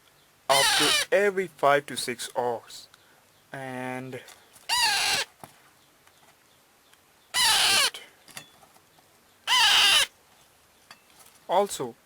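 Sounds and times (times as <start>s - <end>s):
parakeet chick harsh calls: 0.5s - 1.2s, 4.7s - 5.3s, 7.3s - 8.0s, 9.4s - 10.1s.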